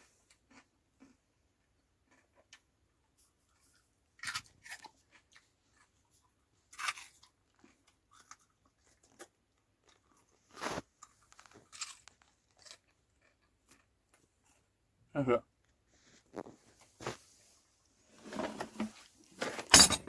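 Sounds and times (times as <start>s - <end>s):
soft chewing: 0.0s - 14.8s, 15.6s - 17.8s
person crunching raw potato: 0.2s - 14.7s.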